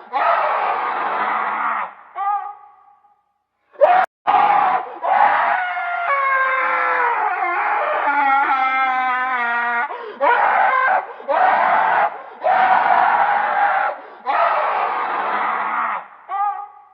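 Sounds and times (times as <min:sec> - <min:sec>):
creature wavering wail: 0:03.8 - 0:11.8
creature screeching shrieks: 0:03.8 - 0:16.6.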